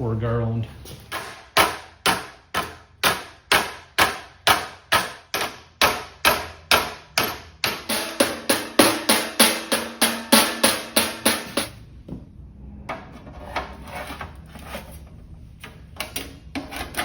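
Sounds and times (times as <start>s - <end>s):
mallet striking sheet steel: 1.1s - 11.8s.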